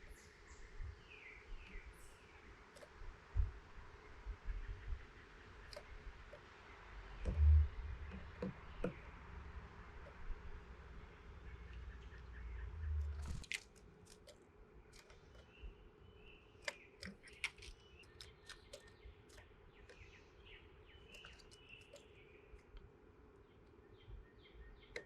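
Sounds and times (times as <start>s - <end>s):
birds chirping: 0.0s - 13.4s, 14.3s - 25.0s
birds pecking seed: 1.4s - 25.0s
low rumble: 10.8s - 13.4s.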